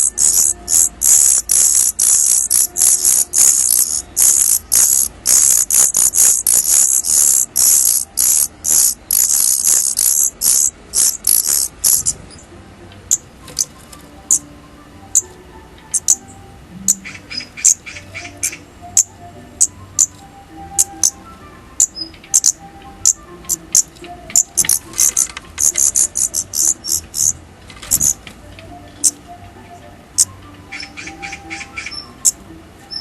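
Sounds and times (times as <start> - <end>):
chicks chirping: 0.0 - 12.4, 24.3 - 28.2.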